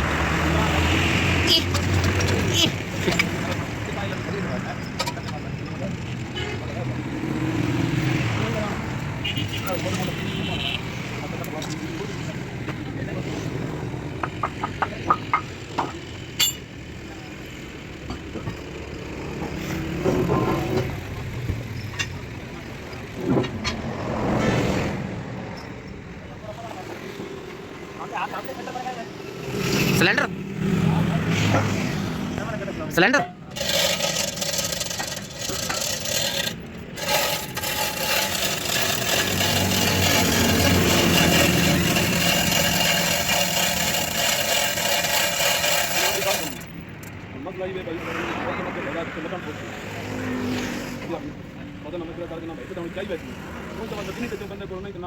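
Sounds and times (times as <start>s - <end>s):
metal rasping and scraping: 0.4s - 3.9s, 14.2s - 16.7s, 32.9s - 47.1s
metallic clinks of tools on metal: 16.4s - 16.6s.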